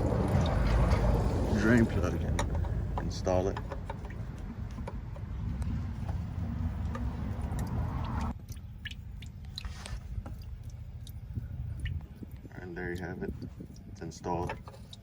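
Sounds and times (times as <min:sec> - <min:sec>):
drain plug clicks and scrapes: 0:00.3 - 0:08.3.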